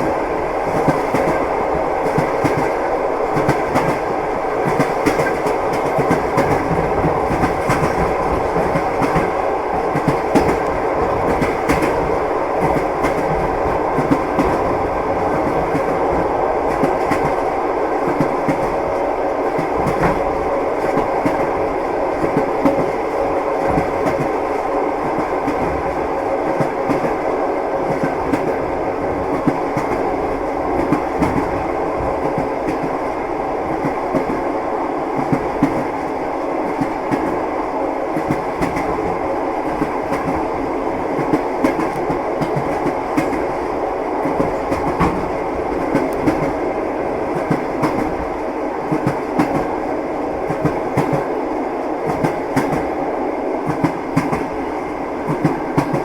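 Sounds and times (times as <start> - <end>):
train wheels clattering on rails: 0.0 - 34.5, 35.1 - 37.4, 38.1 - 53.0, 53.6 - 56.0.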